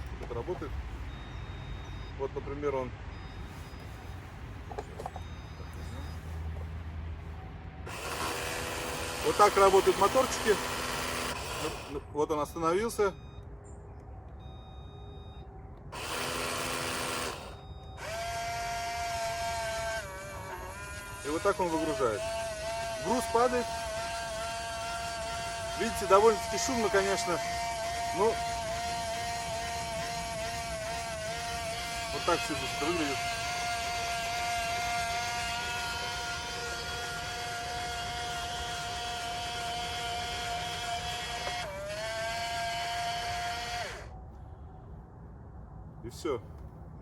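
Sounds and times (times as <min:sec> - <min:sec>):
small electric motor whirring: 0:07.9 - 0:12.0, 0:15.9 - 0:44.2.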